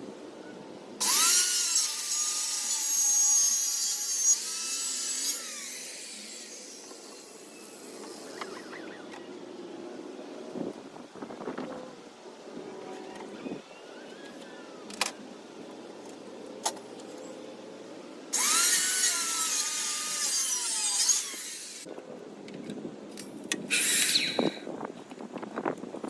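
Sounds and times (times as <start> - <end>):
power tool motor cutting wood: 1.0 - 9.0, 18.4 - 21.9, 23.7 - 24.6.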